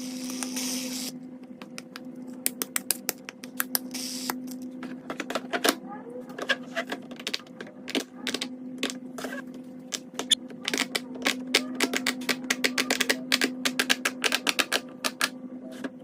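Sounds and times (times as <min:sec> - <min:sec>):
steady low hum: 0:00.0 - 0:16.0
fidget toys clicking: 0:10.2 - 0:15.3.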